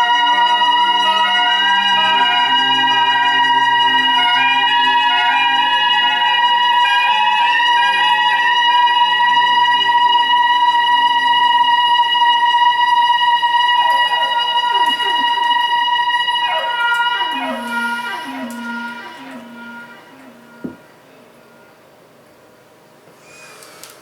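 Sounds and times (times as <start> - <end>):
soprano saxophone long note: 0.0 - 21.8
backing track chords: 13.2 - 21.7.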